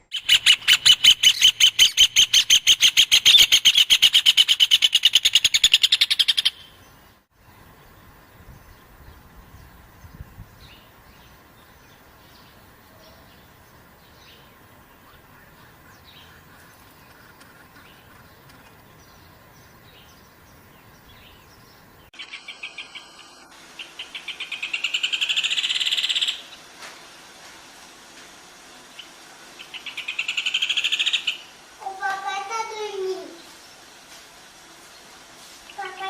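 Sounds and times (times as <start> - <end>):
bird song with fast trill: 0.0 - 26.5.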